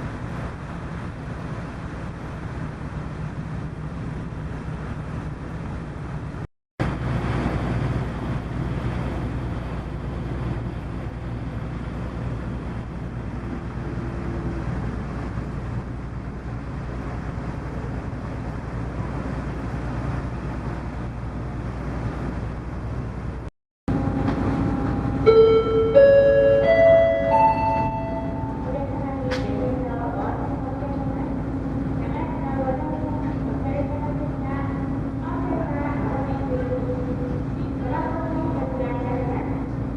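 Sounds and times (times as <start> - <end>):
ferry engine drone: 0.0 - 39.9
chime-like melody: 25.3 - 28.6.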